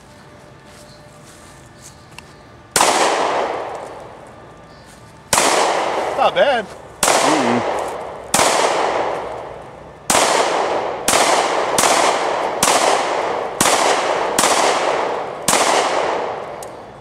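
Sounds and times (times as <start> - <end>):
pistol shots with echo: 2.8 - 3.8, 5.3 - 16.6.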